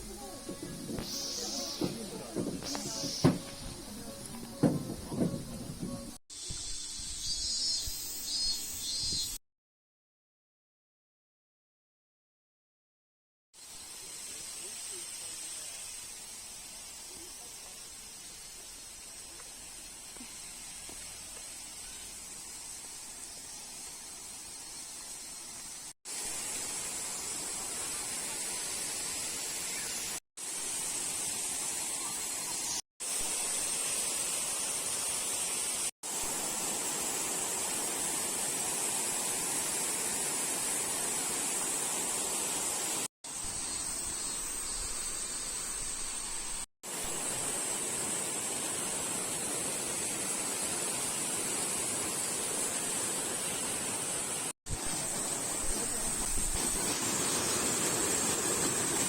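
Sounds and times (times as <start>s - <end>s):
waterfall rushing: 46.8s - 59.0s.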